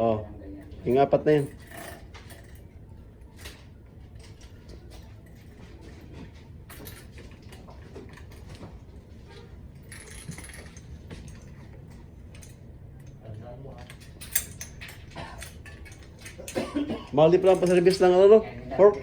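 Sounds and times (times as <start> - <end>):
metallic clinks of tools: 13.8 - 18.2.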